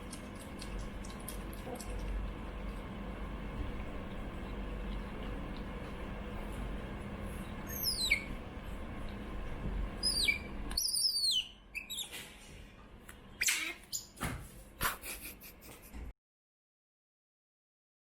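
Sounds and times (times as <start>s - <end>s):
otter chirping: 7.4s - 8.4s, 10.0s - 12.2s, 13.4s - 14.2s.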